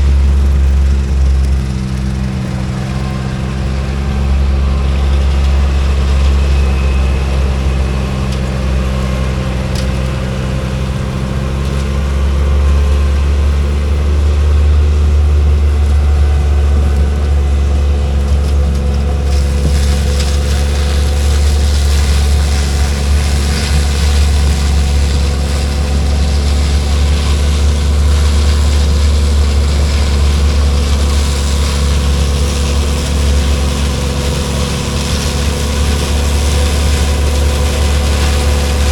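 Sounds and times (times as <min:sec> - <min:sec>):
diesel engine humming: 0:00.0 - 0:38.9.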